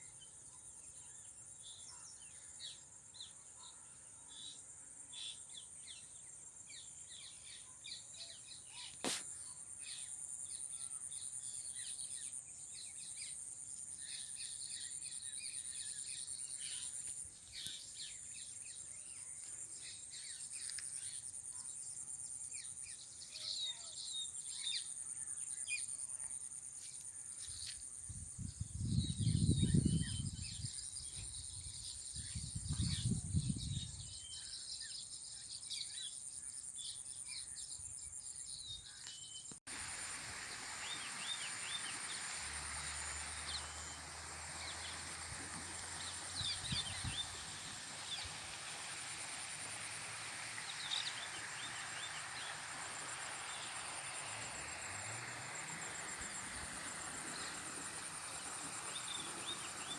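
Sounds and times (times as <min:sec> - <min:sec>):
crickets trilling: 0:39.6 - 0:59.9
bird chirps: 0:40.8 - 0:48.8.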